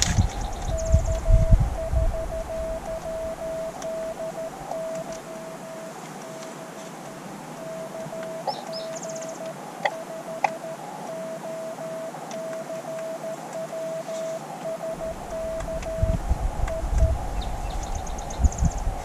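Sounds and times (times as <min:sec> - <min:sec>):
morse code tone: 0:00.0 - 0:06.8, 0:07.6 - 0:19.0
radio hiss: 0:00.0 - 0:19.0
sharp clicks: 0:02.4 - 0:07.2.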